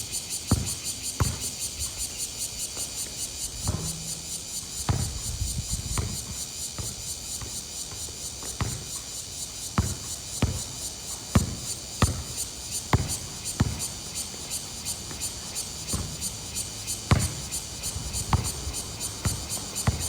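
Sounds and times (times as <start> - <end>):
insects buzzing: 0.0 - 20.0
basketball bouncing on hard court: 0.5 - 1.5, 3.7 - 5.3, 5.9 - 7.6, 8.5 - 9.0, 9.8 - 14.0, 15.9 - 16.4, 17.1 - 20.0.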